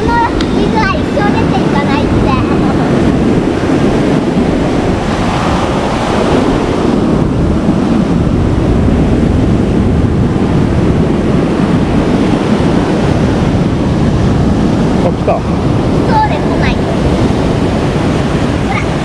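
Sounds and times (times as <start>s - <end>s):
heavy surf washing ashore: 0.0s - 19.0s
wind buffeting microphone: 0.0s - 19.0s.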